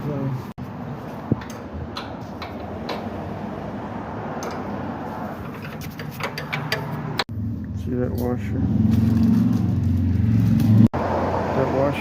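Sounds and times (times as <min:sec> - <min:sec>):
hand tools tapping on metal: 0:01.3 - 0:03.3, 0:04.3 - 0:07.3.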